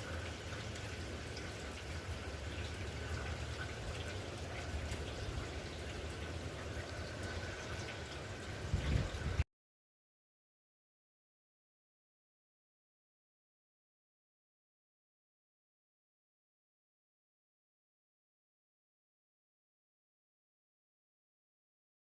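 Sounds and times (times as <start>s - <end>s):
steady rain falling: 0.0s - 9.4s.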